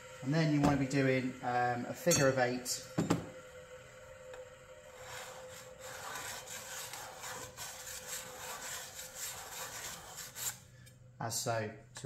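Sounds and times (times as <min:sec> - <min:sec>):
blade rasping on sharpening stone: 0:05.0 - 0:10.6.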